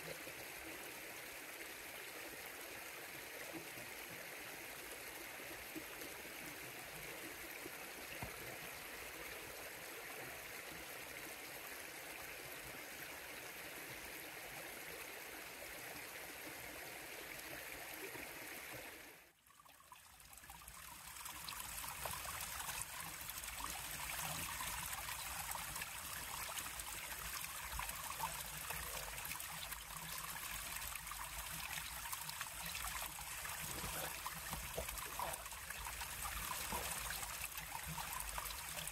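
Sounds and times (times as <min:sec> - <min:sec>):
river water flowing: 0:20.0 - 0:38.9.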